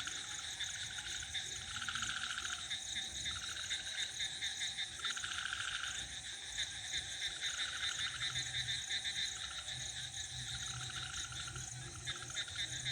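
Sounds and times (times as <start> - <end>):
frogs and crickets trilling: 0.0 - 12.9
low pulsing frog croak: 10.3 - 12.9.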